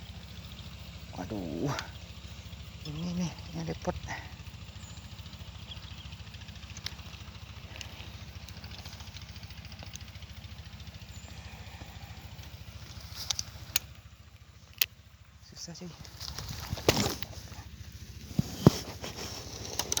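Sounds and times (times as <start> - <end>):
small engine idling: 0.0 - 20.0
faint clicks: 6.6 - 10.4.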